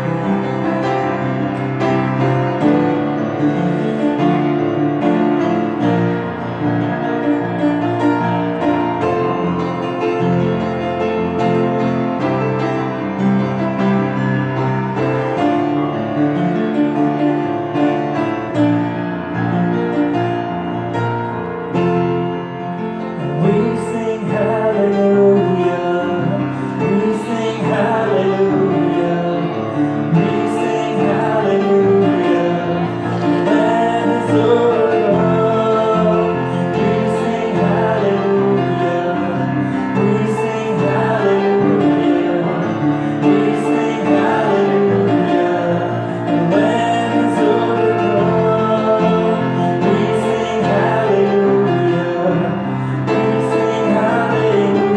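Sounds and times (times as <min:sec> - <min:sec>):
piano accompaniment: 0:00.0 - 0:54.9
person singing: 0:23.2 - 0:54.9.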